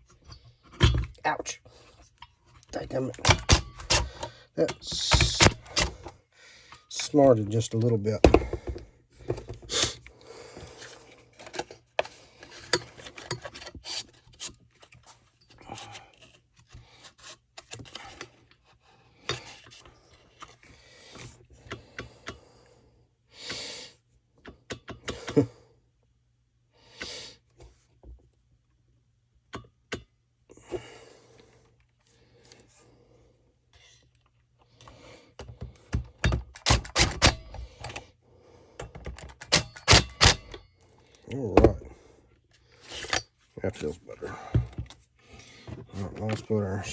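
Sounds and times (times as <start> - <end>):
clicks and taps of tools: 38.8 - 40.6.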